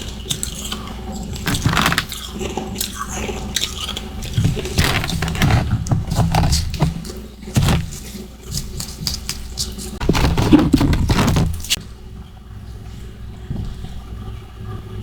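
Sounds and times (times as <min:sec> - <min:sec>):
crunching and chewing ice: 0:00.0 - 0:11.8.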